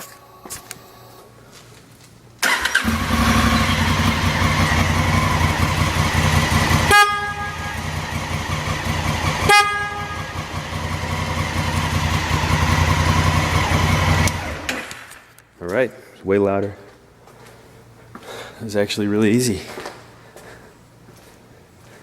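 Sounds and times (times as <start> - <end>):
motorcycle engine idling: 2.8 - 14.7
horn blasts: 5.0 - 12.9.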